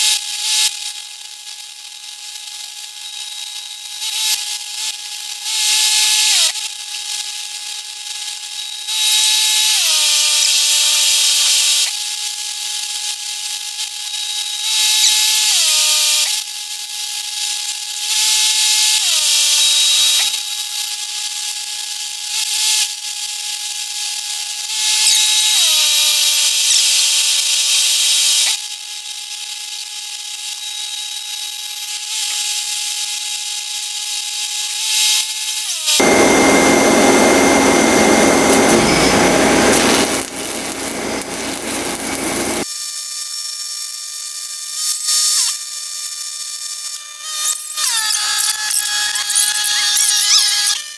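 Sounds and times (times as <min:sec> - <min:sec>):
welder engine running: 0:36.0 - 0:42.6
welding arc crackling: 0:36.0 - 0:42.6.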